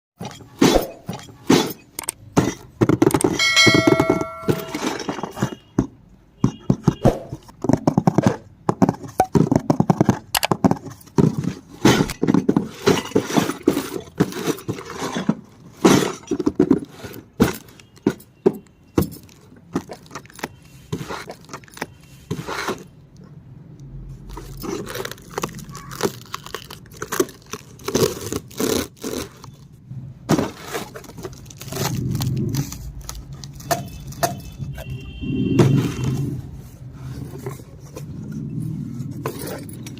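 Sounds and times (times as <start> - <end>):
short ringing note: 3.4 - 5.0.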